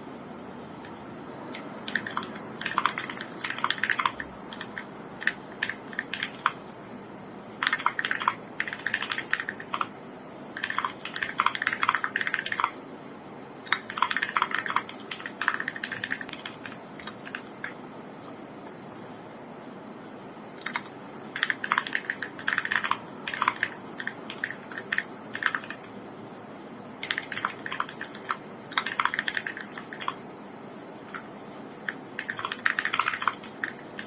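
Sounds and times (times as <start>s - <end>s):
mechanical keyboard typing: 0.8s - 6.6s, 7.6s - 9.9s, 10.6s - 12.8s, 13.6s - 17.8s, 20.6s - 25.9s, 27.0s - 30.2s, 31.0s - 34.0s.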